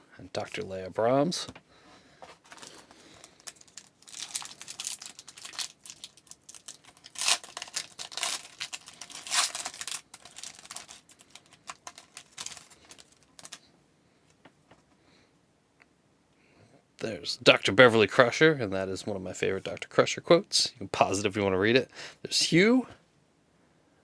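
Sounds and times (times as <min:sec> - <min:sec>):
cards being handled: 0:02.2 - 0:13.6
foil wrapper crinkling: 0:02.2 - 0:13.6.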